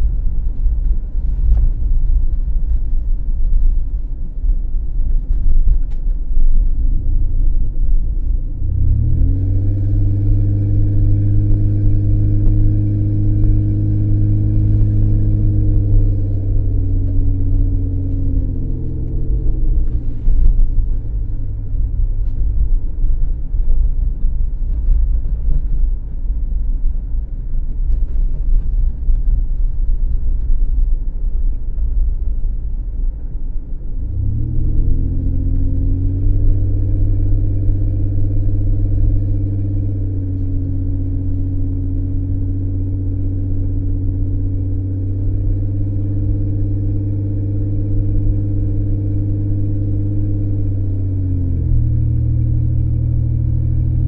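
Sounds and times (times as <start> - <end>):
road and engine rumble: 0.0 - 54.0
pitched engine drone: 8.2 - 26.6, 33.2 - 54.0.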